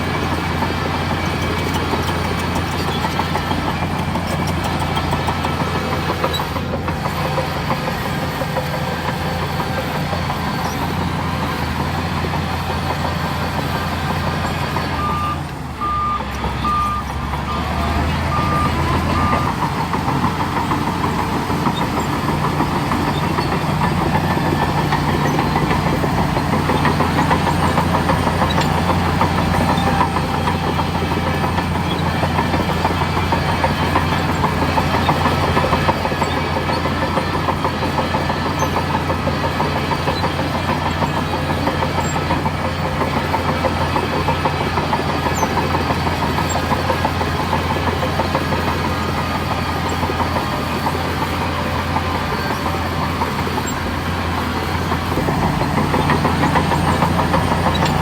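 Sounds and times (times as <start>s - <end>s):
diesel earthmoving machinery running: 0.0s - 58.0s
reversing alarm beeps: 14.1s - 19.8s.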